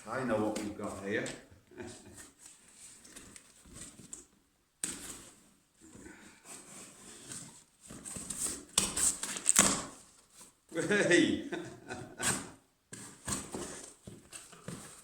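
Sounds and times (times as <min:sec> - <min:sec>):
cardboard parcel being opened: 0:06.6 - 0:10.6.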